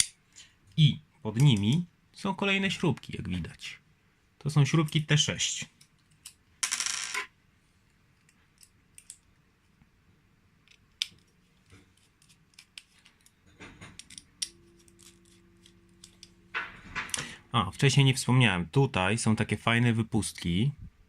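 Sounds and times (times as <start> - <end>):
faint steady hum: 0.0 - 21.0
screwdriver clicks on metal parts: 12.2 - 16.4.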